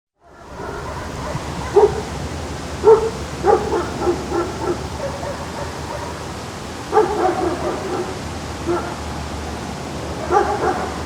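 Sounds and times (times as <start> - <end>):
dog barking: 0.2 - 2.1, 2.8 - 6.2, 6.9 - 9.0, 10.2 - 11.0
low outdoor background hum: 0.2 - 11.0.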